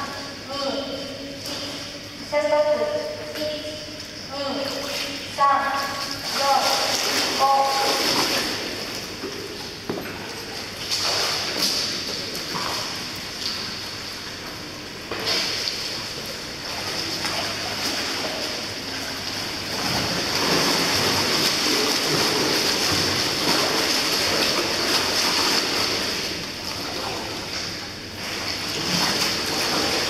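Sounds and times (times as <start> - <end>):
pool water sloshing: 0.0 - 30.0.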